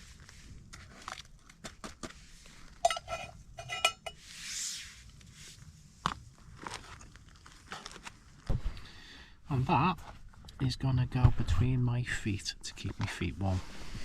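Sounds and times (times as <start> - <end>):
metal cookware clinking: 2.8 - 4.2.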